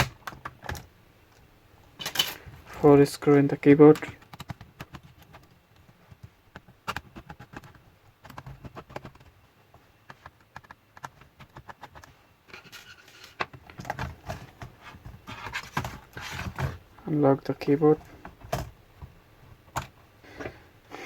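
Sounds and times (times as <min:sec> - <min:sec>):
hand tools clicking on plastic: 0:03.9 - 0:09.4
tools scraping plastic: 0:10.1 - 0:16.9.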